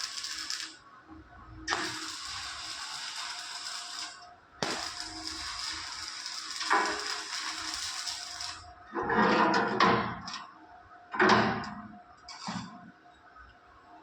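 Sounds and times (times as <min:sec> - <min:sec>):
arc welding hiss: 0:00.0 - 0:00.8, 0:01.7 - 0:08.7.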